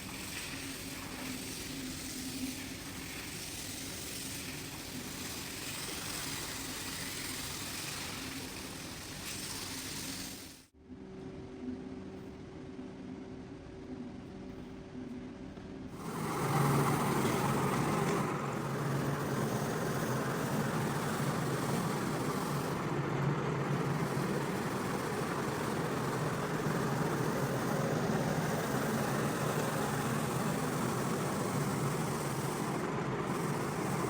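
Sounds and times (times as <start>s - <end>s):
carpet cleaning machine running: 16.0s - 34.0s.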